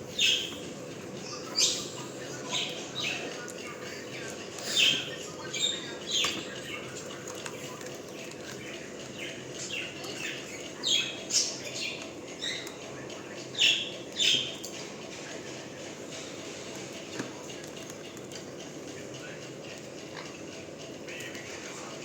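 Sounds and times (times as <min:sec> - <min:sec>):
parrot chirping: 0:00.1 - 0:00.5.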